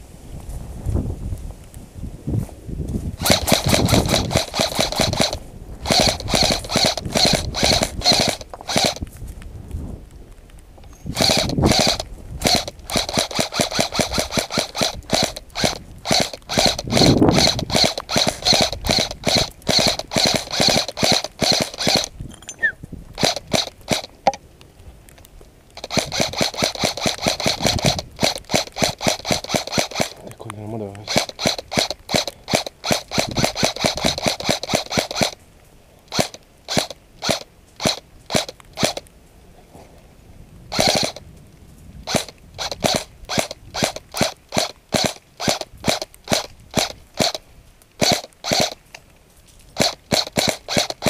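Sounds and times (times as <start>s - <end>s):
airsoft rifle rapid fire: 3.2s - 9.0s, 11.1s - 22.2s, 23.2s - 24.1s, 25.8s - 30.2s, 31.0s - 35.4s, 36.1s - 39.1s, 40.7s - 41.2s, 42.0s - 47.4s, 48.0s - 48.8s, 49.8s - 51.0s.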